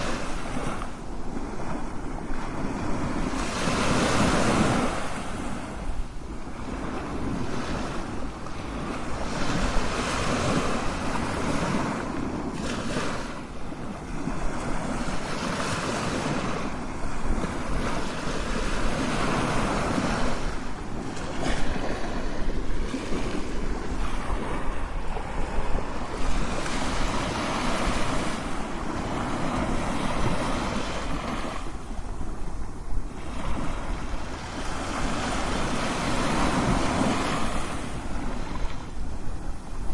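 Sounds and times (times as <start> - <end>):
ocean waves crashing on shore: 0.0 - 39.9.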